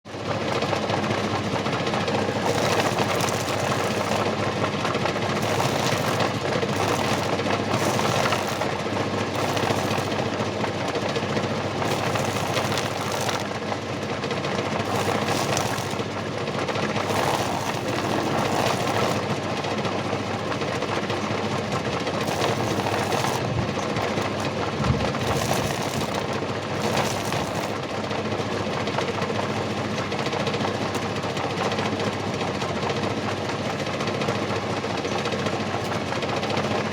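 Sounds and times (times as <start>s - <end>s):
lathe motor whirring: 2.2s - 14.1s, 14.7s - 19.6s, 22.2s - 28.0s.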